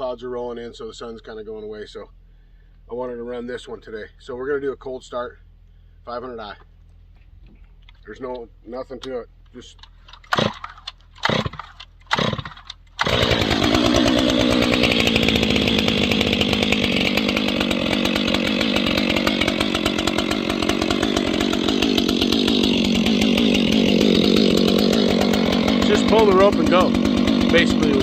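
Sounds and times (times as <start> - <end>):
starter rope pulled: 9.1 - 28.0
chainsaw engine running: 9.6 - 28.0.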